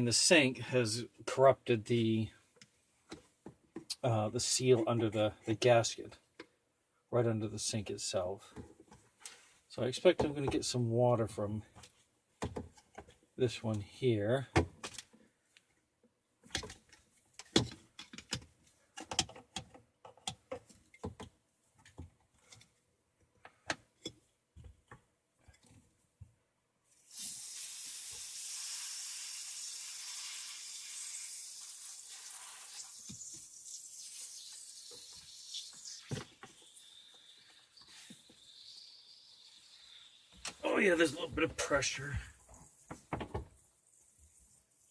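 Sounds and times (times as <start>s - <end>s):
pressurized water spraying: 27.1s - 42.1s.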